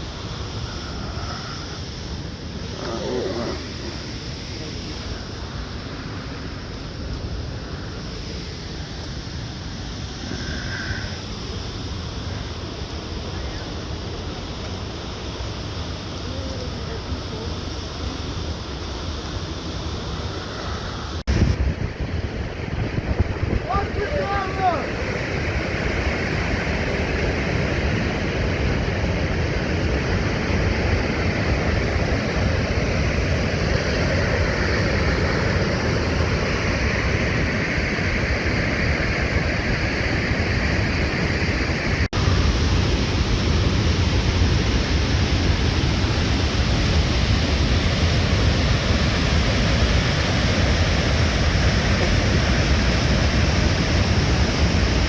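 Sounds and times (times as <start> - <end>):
waterfall roaring: 12.3 - 55.0.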